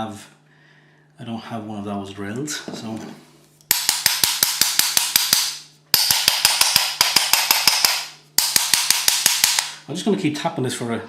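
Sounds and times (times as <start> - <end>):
rapid metallic tapping on motor: 3.6 - 9.8.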